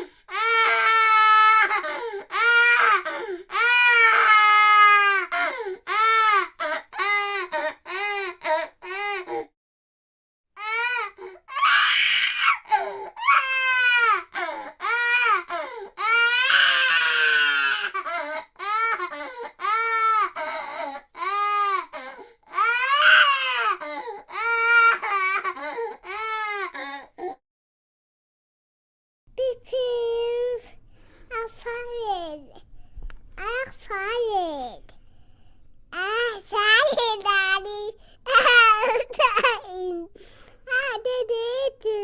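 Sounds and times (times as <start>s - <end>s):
infant crying: 0.0s - 9.5s, 10.6s - 27.4s.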